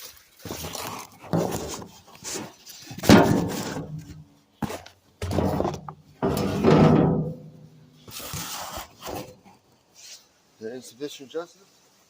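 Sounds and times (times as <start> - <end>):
knocks and clunks of tools: 3.0 - 7.7.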